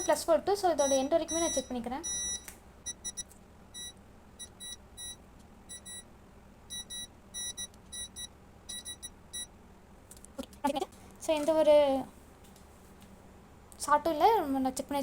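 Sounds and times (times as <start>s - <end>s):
multimeter continuity beeps: 0.0s - 6.1s, 6.7s - 9.5s.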